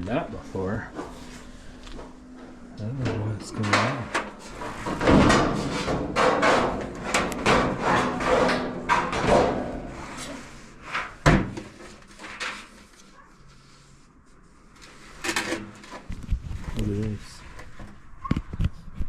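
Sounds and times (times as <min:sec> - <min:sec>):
clothes dryer humming: 0:00.0 - 0:11.6
scraping knocks in dryer drum: 0:00.9 - 0:12.8.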